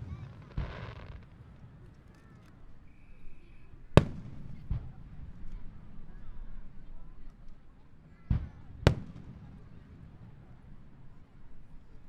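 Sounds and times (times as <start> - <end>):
dull boom: 0.0 - 1.3
fireworks hissing burst: 0.0 - 1.4
fireworks loud bang: 0.0 - 1.6.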